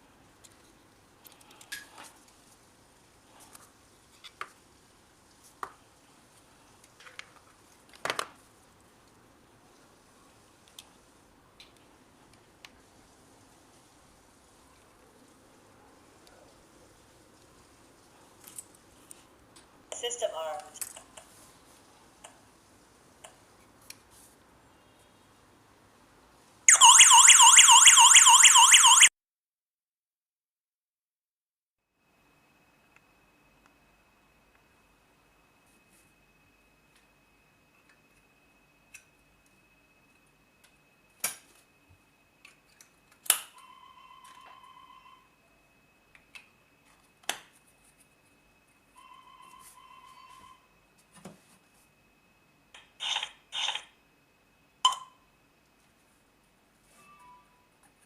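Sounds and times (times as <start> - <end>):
warbling alarm siren: 26.7 - 29.1.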